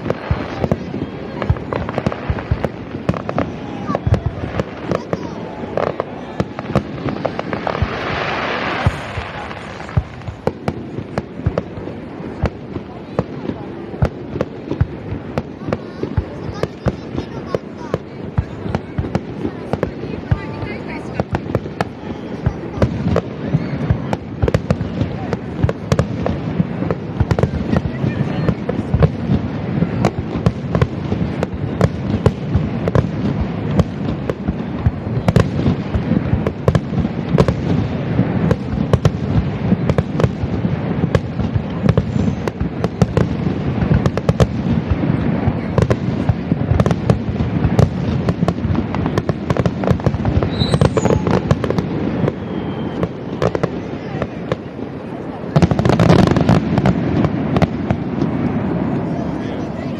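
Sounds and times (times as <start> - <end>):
firework shell bursts: 50.4 - 51.2.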